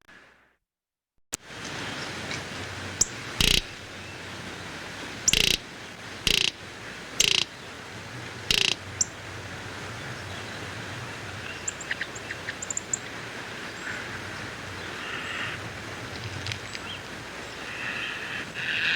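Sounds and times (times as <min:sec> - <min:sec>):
steady outdoor hiss: 0:01.4 - 0:18.9
harsh rasping bird calls: 0:02.9 - 0:04.6, 0:05.2 - 0:18.9
high quick bird chirps: 0:03.0 - 0:03.8, 0:05.3 - 0:05.6, 0:07.2 - 0:07.5.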